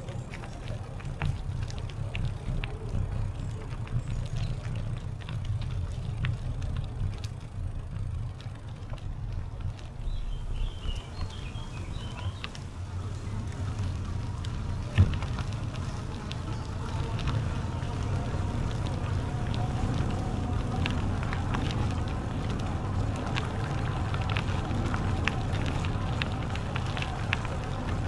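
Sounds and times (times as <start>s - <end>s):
bicycle tyres rumbling on trail: 0.0s - 28.0s
small clicks and rattles: 0.0s - 28.0s
bird chirping: 10.0s - 12.6s.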